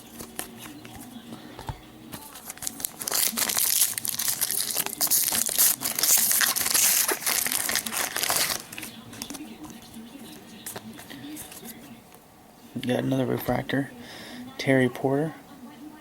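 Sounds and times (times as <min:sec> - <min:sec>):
foil wrapper crinkling and tearing: 0:02.2 - 0:09.8.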